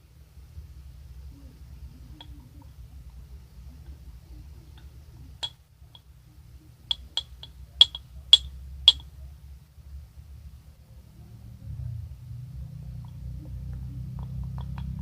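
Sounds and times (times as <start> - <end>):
utensil tapping glass container: 6.9 - 9.1, 14.2 - 15.0.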